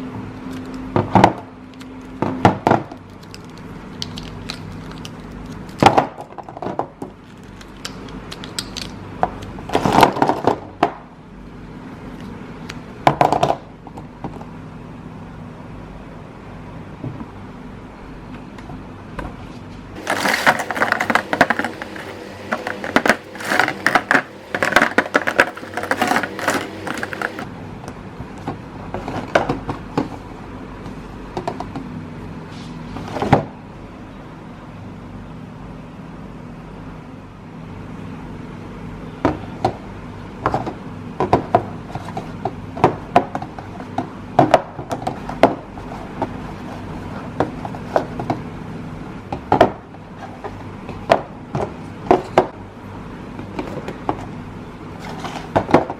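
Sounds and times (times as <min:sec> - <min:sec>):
steady low hum: 0:11.0 - 0:42.0
pens scratching and rubbing: 0:20.0 - 0:27.4.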